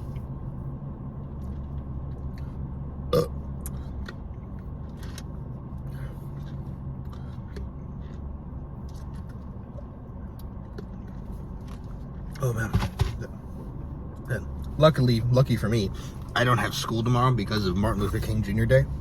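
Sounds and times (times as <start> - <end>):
steady low hum: 0.0 - 19.0
person burping: 3.1 - 3.4.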